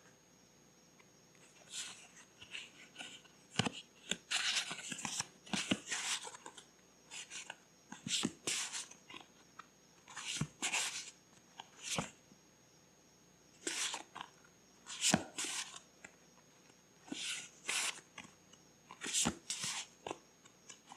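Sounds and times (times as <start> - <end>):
paper rustling and crinkling: 1.5 - 9.3.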